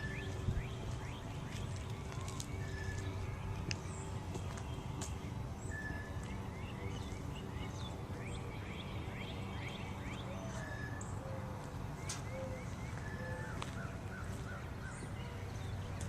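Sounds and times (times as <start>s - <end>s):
small birds chirping: 0.0s - 16.0s
steady low hum: 0.0s - 16.0s.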